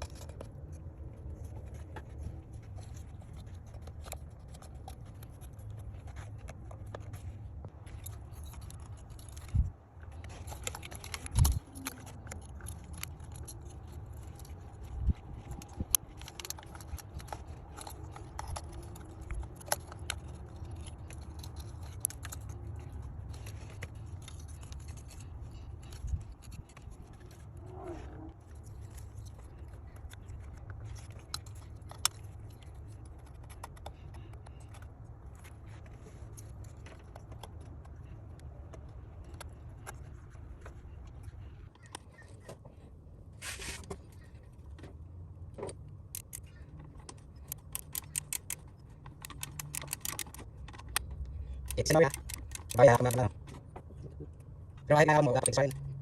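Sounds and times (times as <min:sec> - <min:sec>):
hand tools clicking and scraping: 0:00.0 - 0:56.0.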